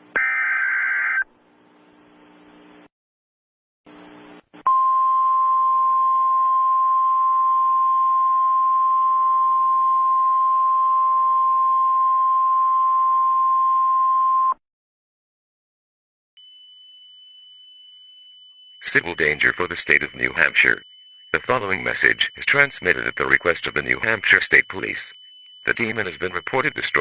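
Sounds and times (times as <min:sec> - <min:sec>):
faint high steady whine: 0:16.5 - 0:27.0
radio hiss: 0:18.8 - 0:20.8, 0:21.4 - 0:27.0.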